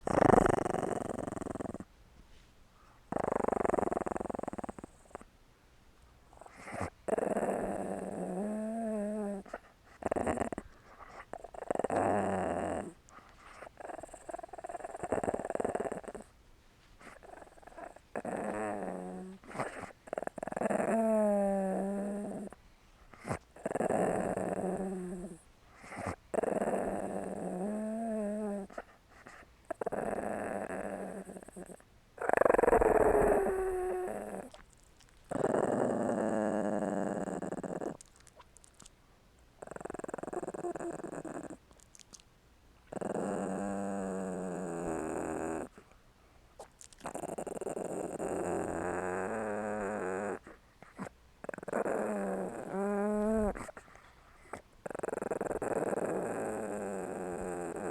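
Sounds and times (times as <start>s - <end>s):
small dog growling: 0.0s - 1.9s, 3.1s - 5.3s, 6.3s - 16.4s, 17.0s - 38.9s, 39.6s - 42.2s, 42.8s - 46.0s, 46.6s - 57.9s.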